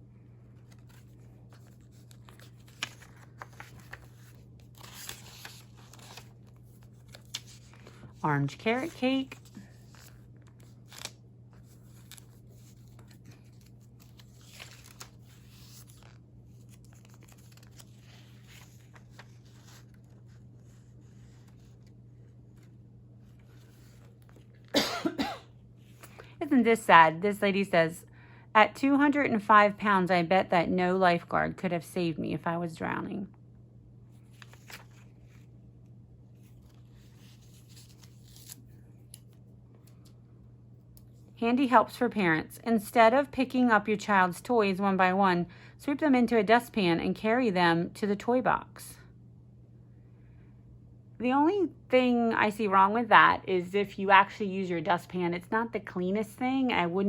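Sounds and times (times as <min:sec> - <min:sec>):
steady low hum: 0:00.0 - 0:57.0
paper pages rustling: 0:00.5 - 0:24.7, 0:34.1 - 0:35.5, 0:36.3 - 0:40.1.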